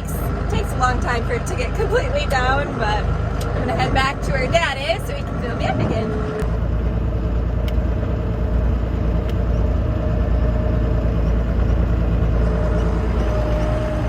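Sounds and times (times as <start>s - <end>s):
tractor diesel engine running: 0.0s - 14.0s.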